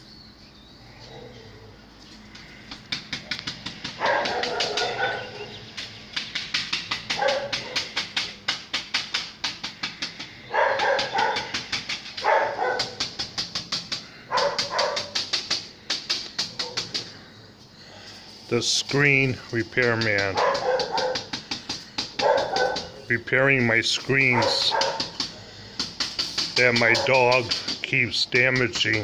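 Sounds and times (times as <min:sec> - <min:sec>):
fast steady clicking: 0:02.4 - 0:17.1, 0:24.0 - 0:29.0
big dog barking: 0:04.0 - 0:05.5, 0:07.2 - 0:07.9, 0:10.5 - 0:11.5, 0:12.2 - 0:13.0, 0:14.3 - 0:15.2, 0:20.3 - 0:21.3, 0:22.2 - 0:23.0, 0:24.2 - 0:25.1, 0:26.8 - 0:27.3.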